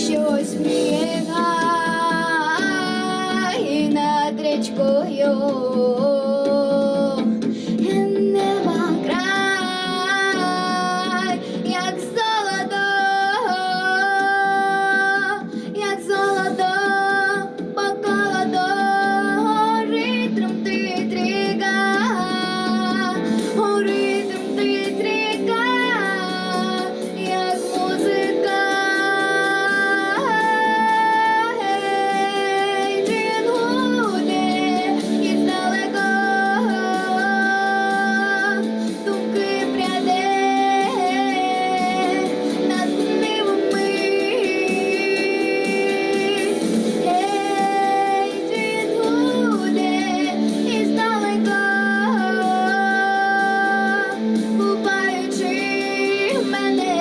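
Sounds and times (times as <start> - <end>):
instrumental backing music: 0.0 - 57.0
woman singing: 0.0 - 57.0.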